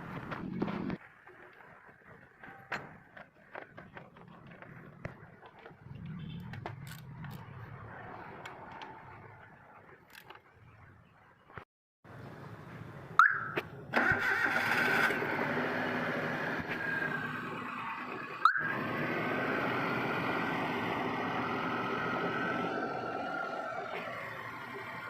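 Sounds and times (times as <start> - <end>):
car engine starting and running: 13.2 - 25.0.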